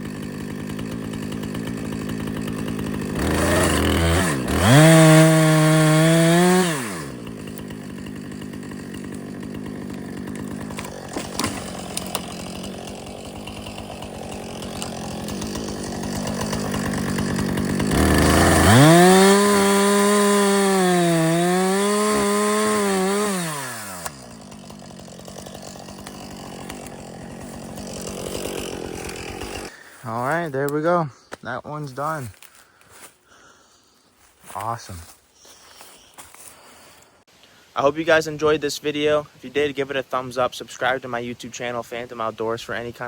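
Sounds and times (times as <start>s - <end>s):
chainsaw engine revving: 0.0s - 30.0s
chainsaw idling: 0.0s - 30.8s
chainsaw cutting through wood: 0.0s - 37.4s.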